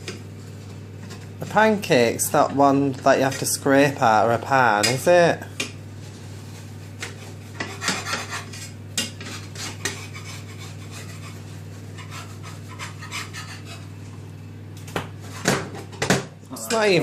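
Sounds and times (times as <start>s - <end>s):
steady low hum: 0.0s - 17.0s
utensil scraping frying pan: 1.1s - 5.3s, 5.9s - 14.1s, 15.2s - 16.0s.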